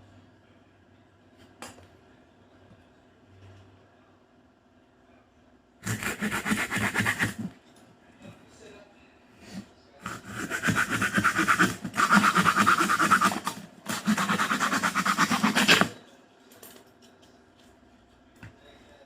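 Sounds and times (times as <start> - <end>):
saw cutting wood: 5.8 - 7.5, 10.0 - 16.0.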